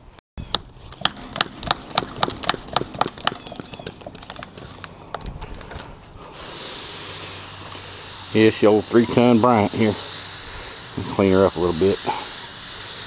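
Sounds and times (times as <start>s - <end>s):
steady hiss: 6.2s - 13.0s.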